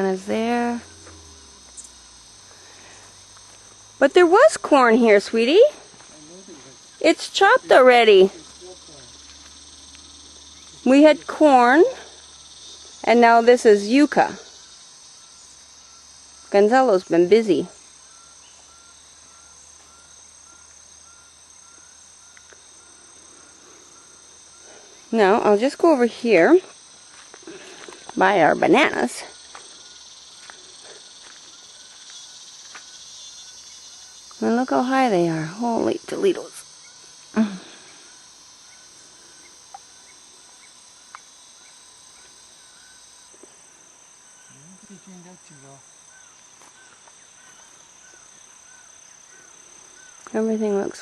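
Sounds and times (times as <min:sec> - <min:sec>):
insects buzzing: 0:00.0 - 0:51.0.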